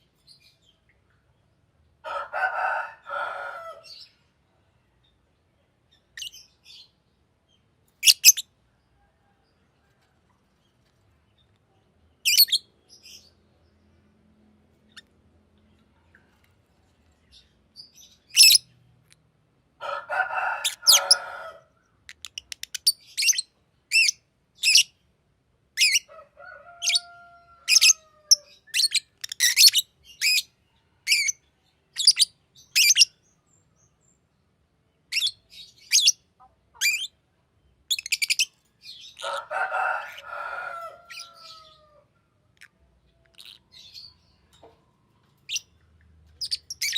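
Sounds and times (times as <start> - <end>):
bird chirping: 7.9 - 8.5, 10.6 - 14.0, 17.0 - 19.2, 22.1 - 25.0, 27.7 - 34.3, 35.0 - 39.4, 42.5 - 46.9.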